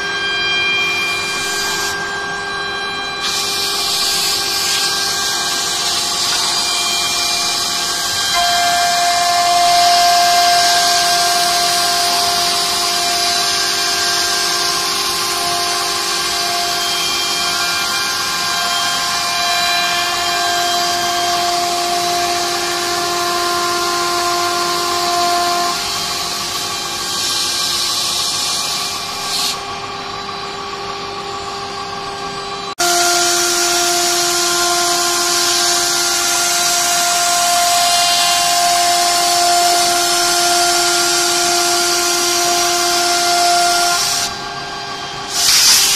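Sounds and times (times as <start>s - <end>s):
router spindle whining: 0.0s - 45.9s
high hiss of cutting: 45.2s - 45.9s.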